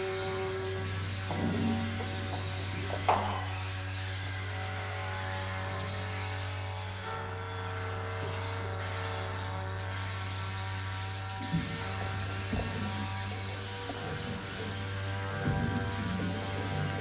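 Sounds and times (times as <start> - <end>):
droning layered hum: 0.0 - 17.0.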